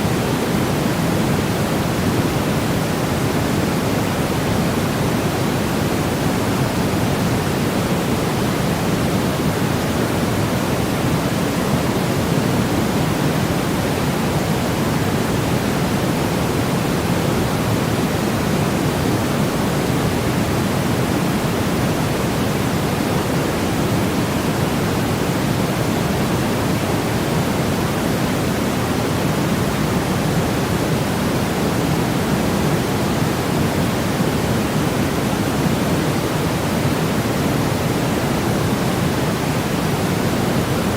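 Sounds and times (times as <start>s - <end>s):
steady white noise hiss: 0.0s - 40.9s.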